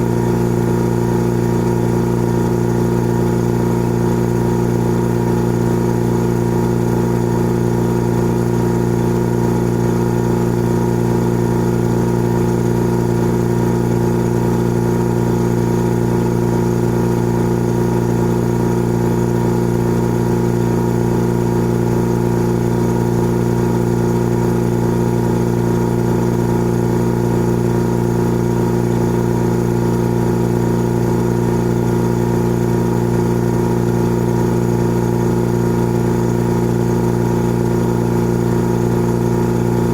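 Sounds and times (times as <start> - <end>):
air compressor humming: 28.0 - 39.9.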